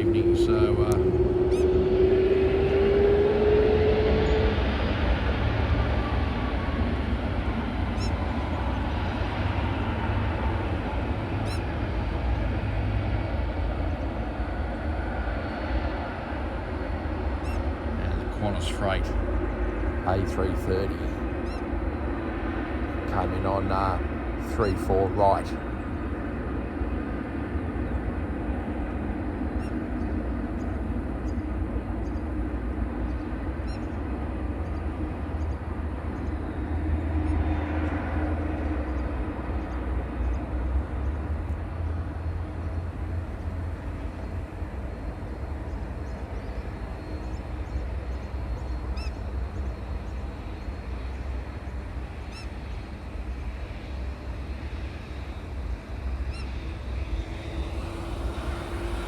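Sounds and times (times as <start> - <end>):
jet engines rumbling: 0.0 - 59.0.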